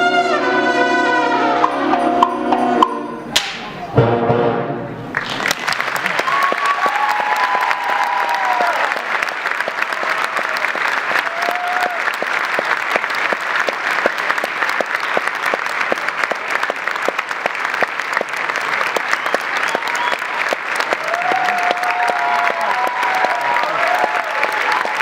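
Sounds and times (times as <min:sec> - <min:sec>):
audience applauding: 0:05.1 - 0:25.0.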